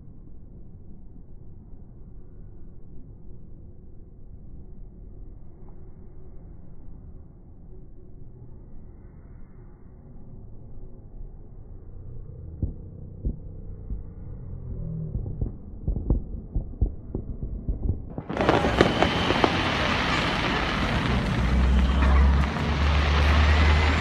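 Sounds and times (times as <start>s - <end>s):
outdoor noise: 0.0s - 24.0s
steady low hum: 0.0s - 24.0s
slowed fireworks thuds: 15.2s - 24.0s.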